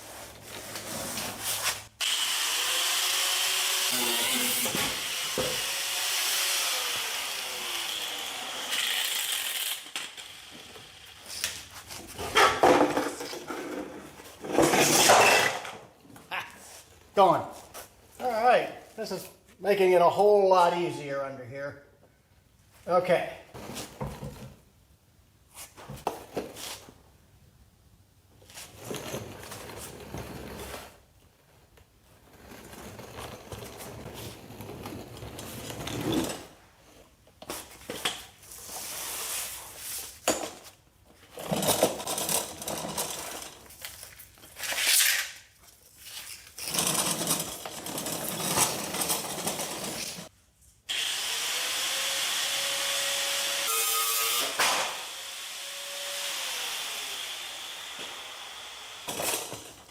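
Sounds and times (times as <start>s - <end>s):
hand tool scraping and rubbing: 0.0s - 2.0s, 32.2s - 40.2s, 41.4s - 50.3s.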